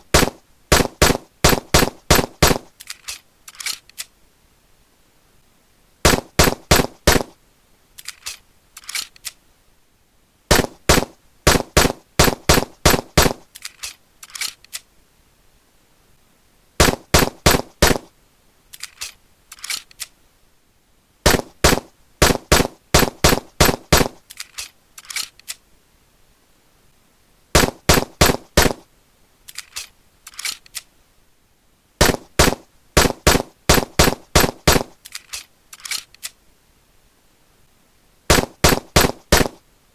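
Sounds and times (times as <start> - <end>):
pistol shots: 0.1 - 2.6, 6.1 - 7.3, 10.5 - 13.4, 21.3 - 24.2, 32.0 - 35.0, 38.3 - 39.6.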